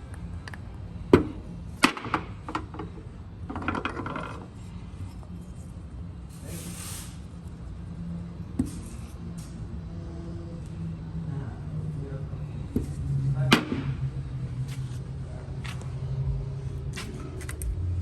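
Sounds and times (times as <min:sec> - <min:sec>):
steady low hum: 0:00.0 - 0:18.0
brief hiss: 0:06.4 - 0:07.2.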